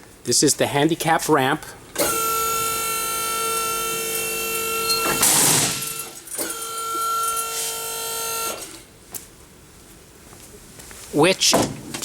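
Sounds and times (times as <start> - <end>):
hydraulic hiss: 2.0 - 8.8
pump motor humming: 2.0 - 8.8.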